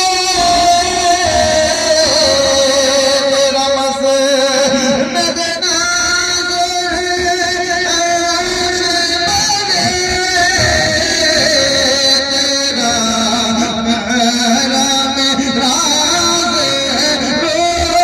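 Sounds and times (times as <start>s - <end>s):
man singing long held notes: 0.0s - 18.0s.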